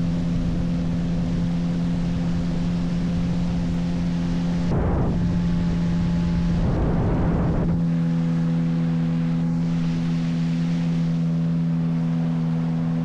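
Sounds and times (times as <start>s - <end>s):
motorboat engine running: 0.0s - 13.0s
rushing noise: 4.7s - 7.7s.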